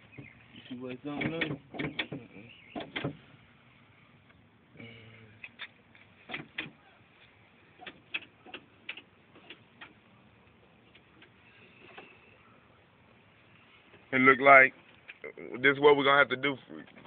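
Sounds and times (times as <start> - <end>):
tools clicking on car door latch: 1.2 - 3.2, 6.3 - 6.8.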